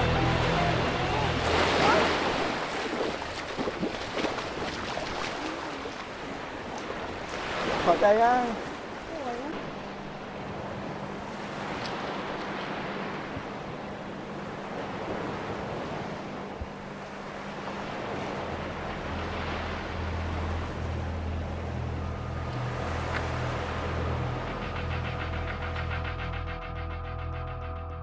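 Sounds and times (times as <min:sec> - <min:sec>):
low steady drone: 0:00.0 - 0:07.3, 0:09.0 - 0:28.0
sea waves breaking on a beach: 0:00.0 - 0:25.7
faint held higher tones: 0:18.4 - 0:28.0.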